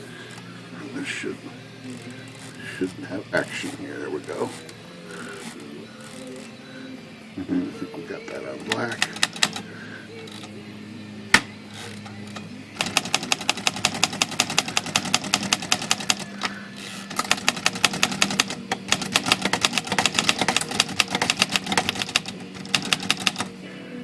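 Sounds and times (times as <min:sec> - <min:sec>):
typewriter key strikes: 0:08.7 - 0:09.7, 0:12.3 - 0:16.5, 0:17.1 - 0:23.5.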